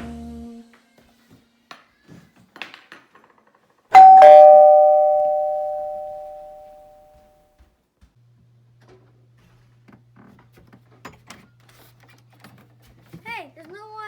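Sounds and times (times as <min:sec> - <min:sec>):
two-tone chime doorbell: 0:04.0 - 0:06.6.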